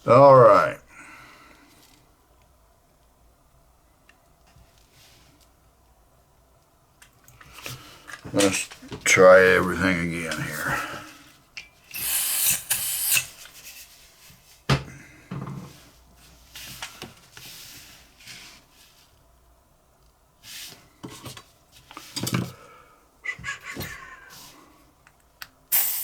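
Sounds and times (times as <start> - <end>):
lighter gas hissing: 11.9 - 13.4, 25.7 - 26.0.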